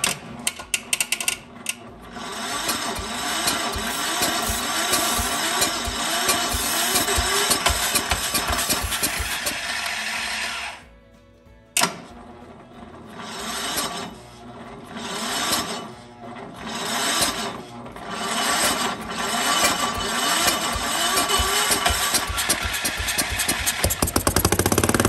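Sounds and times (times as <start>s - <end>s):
small engine running: 0.0s - 10.8s, 12.2s - 25.0s
sharp click: 11.8s - 12.1s.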